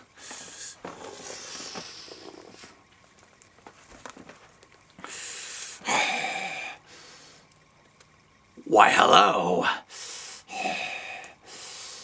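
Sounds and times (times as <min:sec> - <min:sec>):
breathy exhale: 0:05.0 - 0:07.5, 0:09.8 - 0:12.0
breathy vocal sound: 0:05.1 - 0:07.1, 0:10.4 - 0:12.0.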